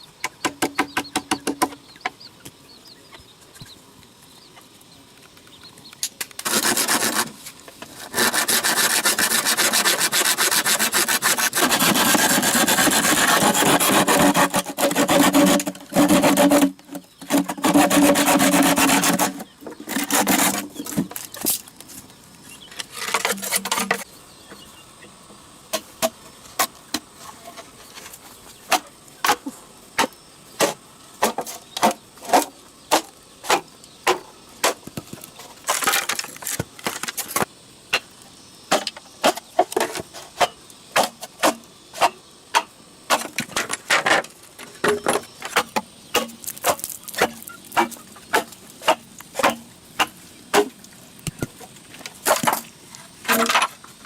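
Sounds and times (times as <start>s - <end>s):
rasping scrapes on wood: 6.4s - 7.4s, 8.0s - 20.8s.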